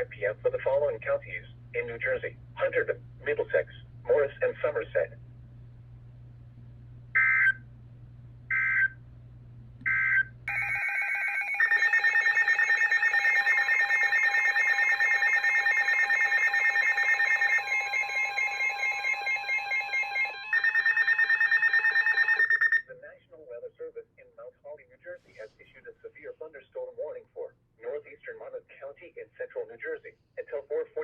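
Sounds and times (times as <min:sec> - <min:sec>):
harsh pulsing electronic tone: 0:10.5 - 0:22.8.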